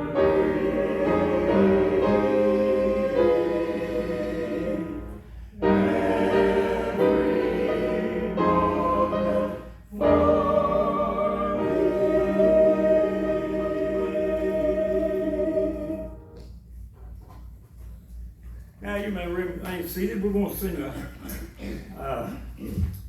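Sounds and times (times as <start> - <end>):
group singing a hymn: 0.0 - 16.4
musical accompaniment: 0.0 - 16.5.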